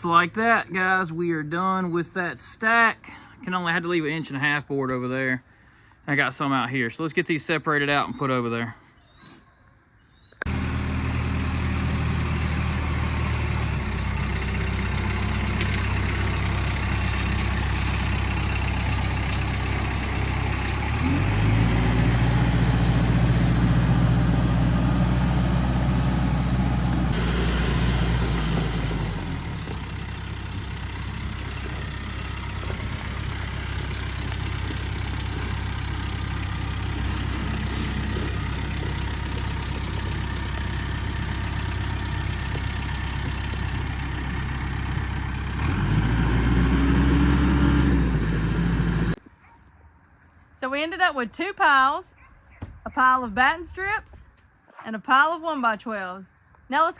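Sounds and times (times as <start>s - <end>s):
engine idling and revving: 10.4s - 49.2s.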